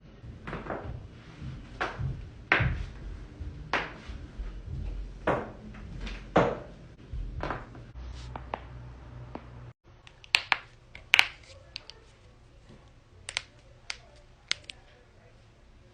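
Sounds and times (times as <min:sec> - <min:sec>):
joints cracking: 0:13.3 - 0:14.8.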